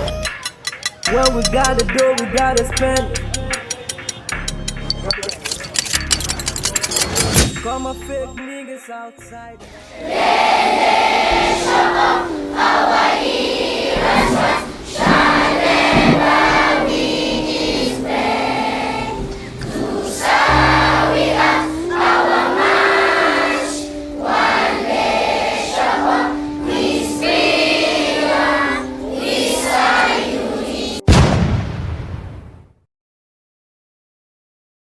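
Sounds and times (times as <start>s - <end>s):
choir singing over held notes: 9.6s - 31.1s
sudden loud hit: 31.1s - 32.7s.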